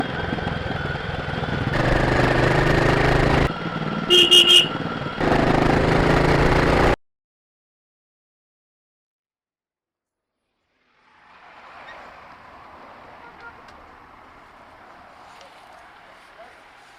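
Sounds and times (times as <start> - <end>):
motorcycle engine running: 0.0 - 7.0
horn beeps: 4.0 - 4.9.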